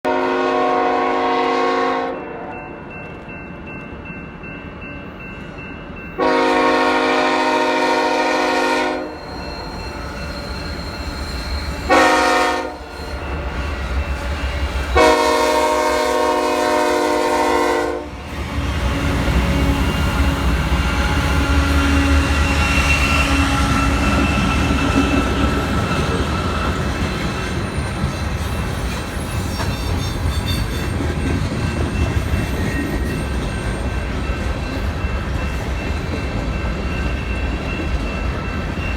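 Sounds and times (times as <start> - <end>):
locomotive air horn blasts: 0.1 - 2.5, 6.2 - 9.2, 11.9 - 12.9, 15.0 - 24.7.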